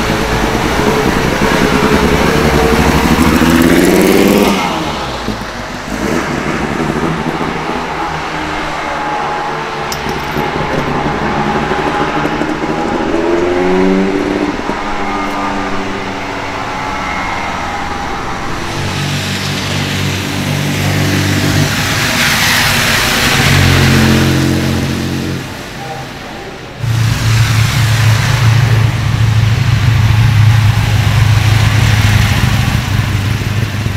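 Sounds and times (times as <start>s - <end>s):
tyres hissing on wet road: 0.0s - 9.9s, 10.6s - 33.9s
car engines revving: 0.0s - 33.9s.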